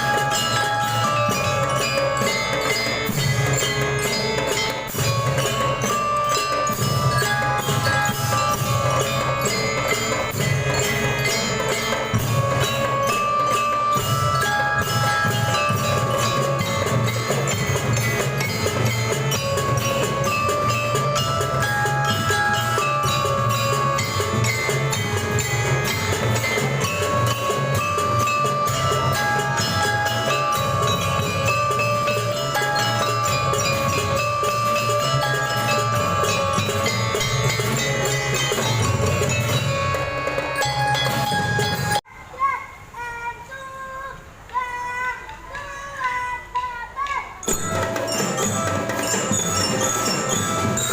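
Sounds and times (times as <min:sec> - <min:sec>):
held melody notes: 0:00.0 - 0:42.0
steady drumming: 0:00.0 - 0:42.0, 0:47.4 - 0:50.9
bell-like mallet percussion: 0:00.0 - 0:42.1, 0:44.6 - 0:50.9.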